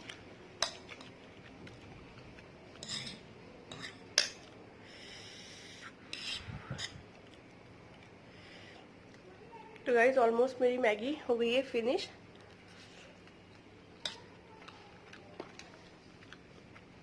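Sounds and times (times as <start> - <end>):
cutlery clinking against a dish: 2.8 - 4.5.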